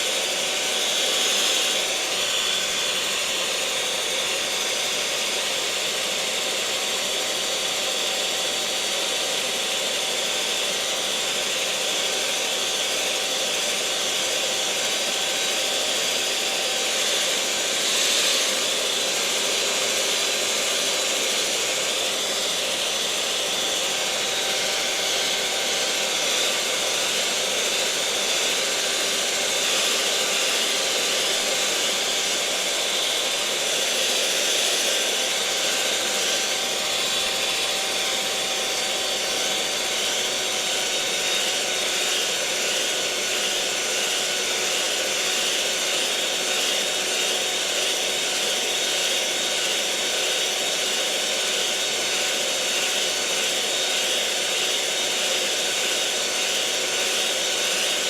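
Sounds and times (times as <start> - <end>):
electric mixer motor humming: 0.0 - 58.0.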